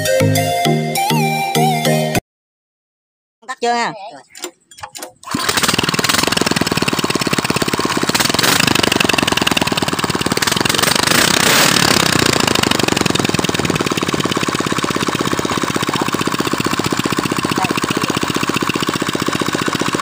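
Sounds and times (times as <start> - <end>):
small engine running: 5.2 - 20.0.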